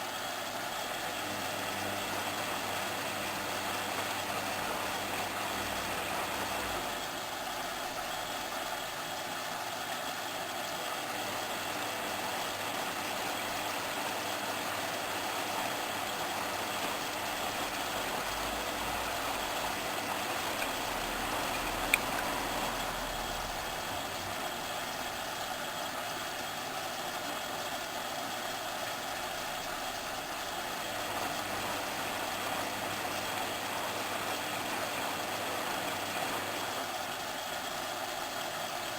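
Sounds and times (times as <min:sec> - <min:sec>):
washing machine running: 0:00.0 - 0:38.9.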